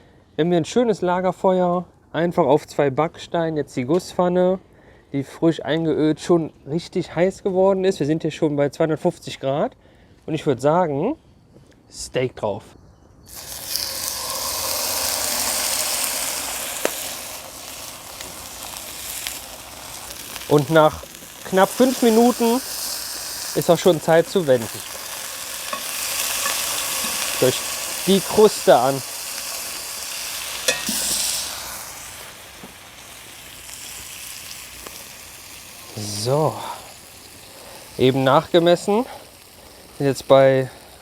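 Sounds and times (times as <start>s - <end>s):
steak sizzling in a pan: 13.3s - 41.0s.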